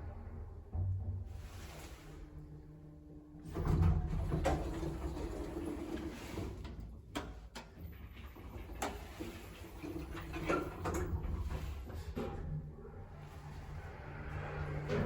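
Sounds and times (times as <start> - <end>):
elevator rumble: 8.5 - 15.0.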